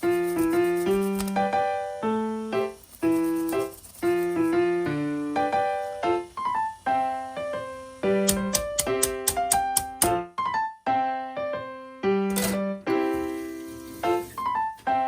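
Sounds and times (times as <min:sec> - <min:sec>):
crisp percussion beat: 0:00.0 - 0:01.7, 0:02.7 - 0:05.8, 0:08.1 - 0:10.2
piano music: 0:00.0 - 0:15.0.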